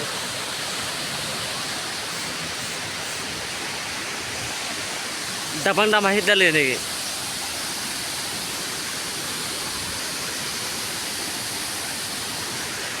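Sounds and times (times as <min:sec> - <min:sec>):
waterfall hissing: 0:00.0 - 0:13.0.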